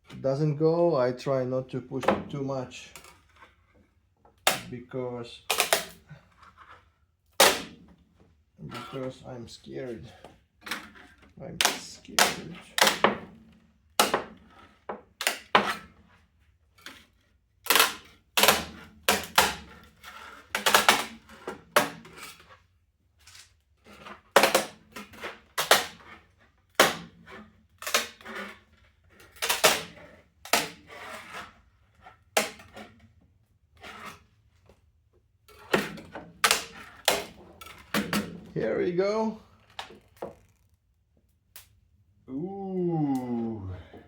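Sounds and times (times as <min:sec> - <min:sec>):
plastic cracking and popping: 0:05.5 - 0:06.0, 0:10.8 - 0:14.3, 0:29.2 - 0:30.8.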